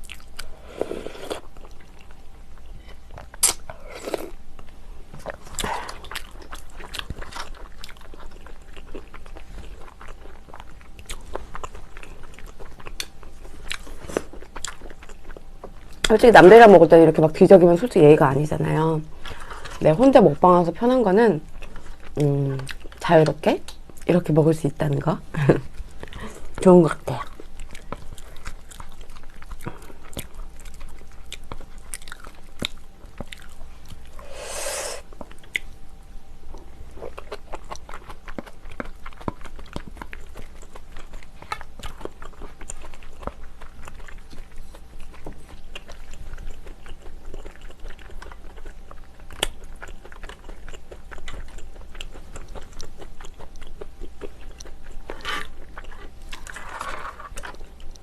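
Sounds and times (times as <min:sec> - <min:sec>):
person chewing and biting: 0:00.0 - 0:16.1, 0:27.2 - 0:35.7, 0:36.5 - 0:58.0.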